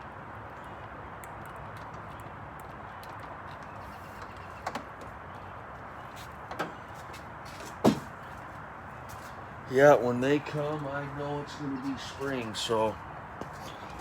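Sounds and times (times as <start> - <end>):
outdoor background hiss: 3.9 - 14.0.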